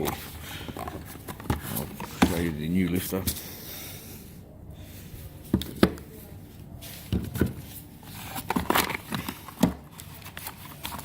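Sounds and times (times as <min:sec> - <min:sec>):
handling knocks and clicks: 0:00.0 - 0:02.6.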